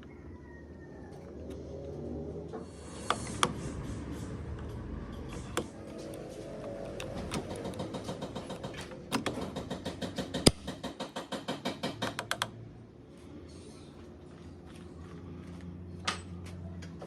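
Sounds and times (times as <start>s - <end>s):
rapid mechanical clicks: 2.8s - 12.6s.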